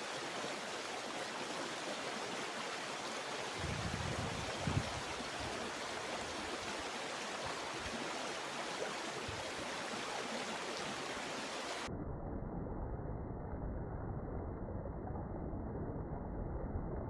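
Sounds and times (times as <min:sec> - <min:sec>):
stream water rushing over rocks: 0:00.0 - 0:11.9.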